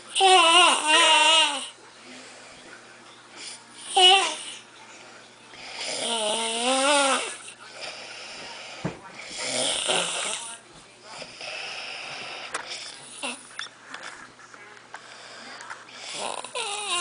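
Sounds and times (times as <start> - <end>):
man snoring with nasal whine: 5.6 - 7.4, 9.4 - 10.3, 16.0 - 17.0.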